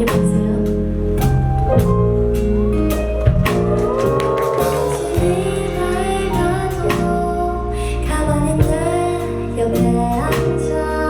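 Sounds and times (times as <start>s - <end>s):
live band playing pop ballad: 0.0s - 11.0s
person singing: 4.4s - 11.0s.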